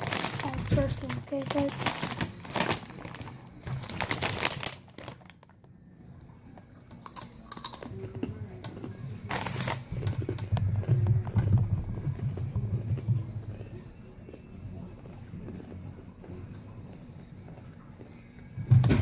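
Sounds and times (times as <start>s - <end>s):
snack bag crinkling: 0.0s - 5.7s, 7.0s - 15.8s
chewing crunchy chips: 6.6s - 18.5s.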